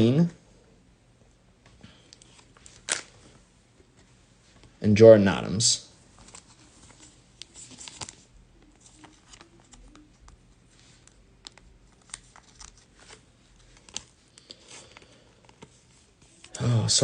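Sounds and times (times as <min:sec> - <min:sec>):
trading cards sliding and rustling: 0:06.2 - 0:16.5.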